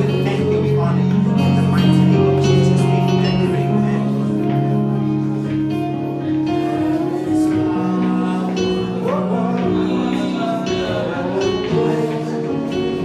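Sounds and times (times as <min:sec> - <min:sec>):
guitar: 0:00.0 - 0:13.0
person singing: 0:06.1 - 0:13.0.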